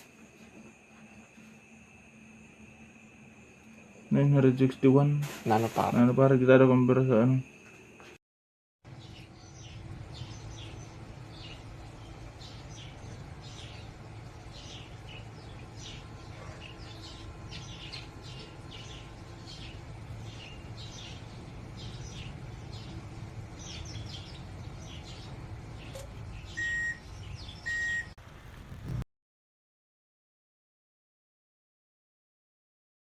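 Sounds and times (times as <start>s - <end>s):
steady low hum: 0.0s - 8.2s, 8.9s - 29.0s
birds chirping: 8.9s - 28.2s
loud electronic beeps: 26.6s - 28.2s.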